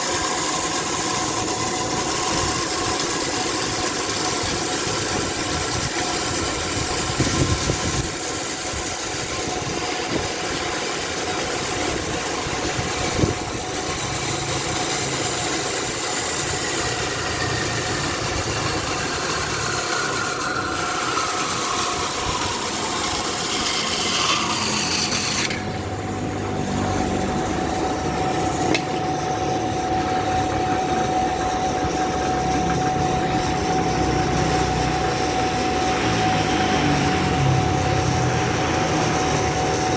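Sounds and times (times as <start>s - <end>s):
engine running: 0.0s - 39.9s
engine saw cutting wood: 0.0s - 39.9s.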